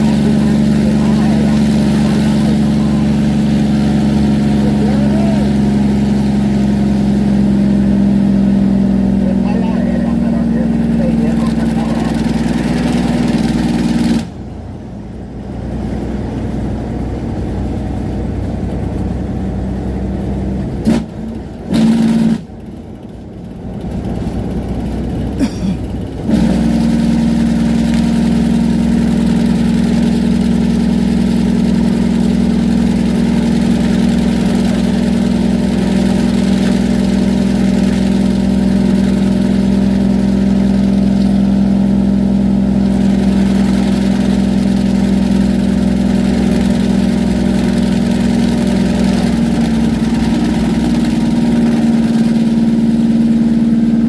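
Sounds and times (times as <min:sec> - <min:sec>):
engine and road noise: 0:00.0 - 0:54.0.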